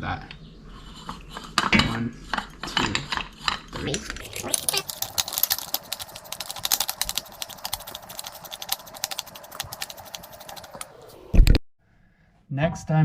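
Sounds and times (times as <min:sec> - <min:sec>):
rapid metallic clicking: 0:04.5 - 0:10.9.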